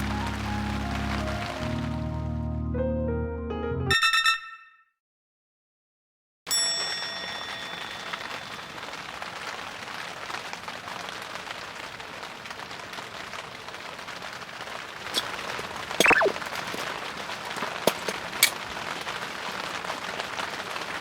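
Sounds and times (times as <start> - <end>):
heavy rain pattering: 0.0 - 2.4, 7.5 - 21.0.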